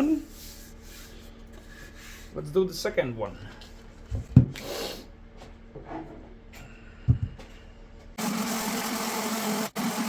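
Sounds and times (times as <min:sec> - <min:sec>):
electric sander humming: 0:08.2 - 0:10.0.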